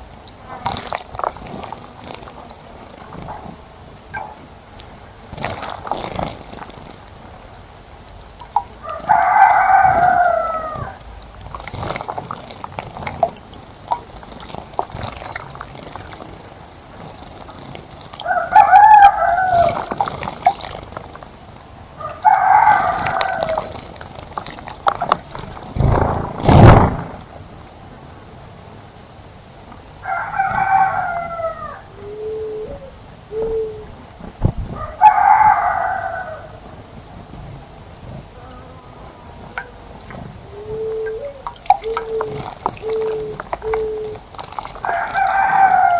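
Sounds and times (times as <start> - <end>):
small birds chirping: 0.0 - 27.3, 36.6 - 45.9
rooster crowing: 8.8 - 11.0, 18.2 - 19.8, 22.0 - 23.7, 30.1 - 31.9, 34.8 - 36.6, 44.8 - 45.9
loud low thud: 25.8 - 27.4.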